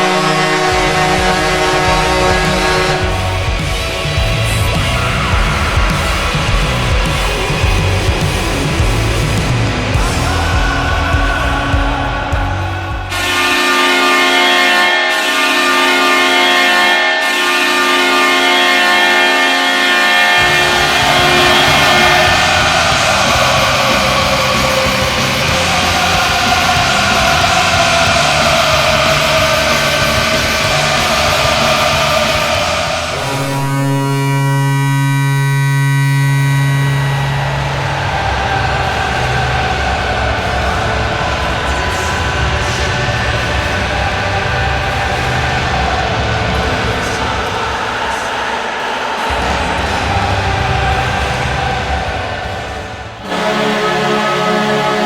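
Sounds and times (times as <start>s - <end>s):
goal horn blast: 0.0s - 4.2s, 13.1s - 37.9s, 53.2s - 55.0s
arena crowd noise: 0.0s - 55.0s
hard rock song: 0.0s - 55.0s.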